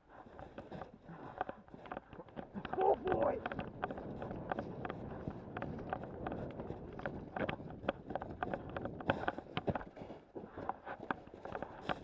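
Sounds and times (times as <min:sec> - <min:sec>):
running footsteps on rough ground: 0:00.0 - 0:12.0
wind on microphone: 0:02.5 - 0:09.6.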